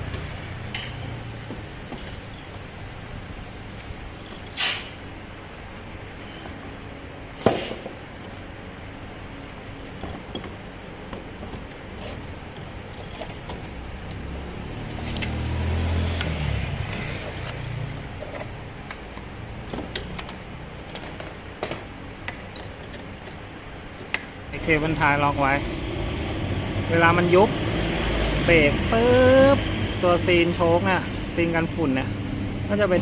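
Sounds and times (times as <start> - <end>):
low engine hum: 0.0 - 21.6, 23.1 - 33.0
metal tools clicking and clinking: 0.7 - 1.1, 12.5 - 13.5, 19.9 - 23.4.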